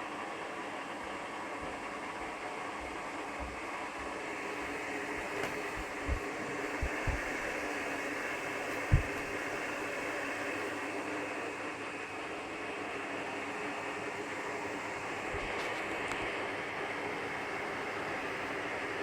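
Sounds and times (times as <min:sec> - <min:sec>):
fan airflow hum: 0:00.0 - 0:16.9
dull low thumps: 0:05.2 - 0:07.6, 0:08.8 - 0:09.4.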